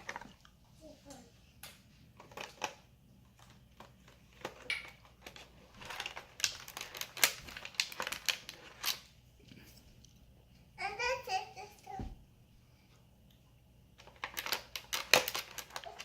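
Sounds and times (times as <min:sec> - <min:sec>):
plastic toy pieces clattering: 0:03.4 - 0:09.0, 0:14.0 - 0:16.0.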